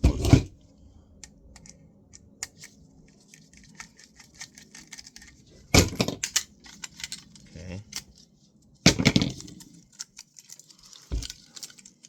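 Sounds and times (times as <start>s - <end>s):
small metal parts clattering: 3.6s - 8.0s, 8.9s - 12.0s.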